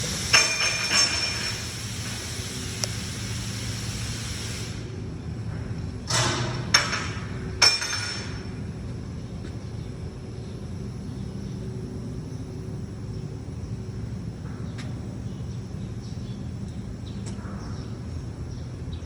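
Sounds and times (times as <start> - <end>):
sharp metallic clanks: 0.3 - 1.7, 6.1 - 8.6.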